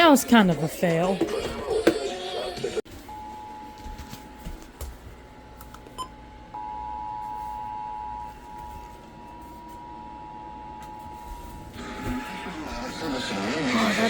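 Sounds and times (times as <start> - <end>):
radio hiss: 11.8 - 14.0.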